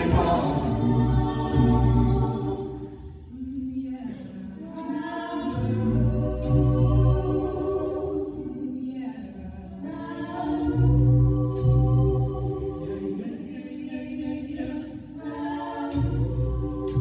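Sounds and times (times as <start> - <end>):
deep vocal bass line: 0.0 - 2.8
a cappella group singing: 0.0 - 17.0.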